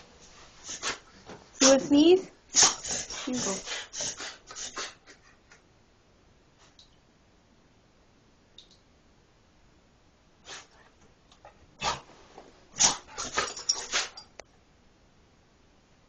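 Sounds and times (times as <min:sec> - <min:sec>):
dog sneezing and snorting: 0:00.6 - 0:01.9, 0:02.5 - 0:05.2, 0:10.4 - 0:10.9, 0:11.8 - 0:12.1, 0:12.8 - 0:14.3.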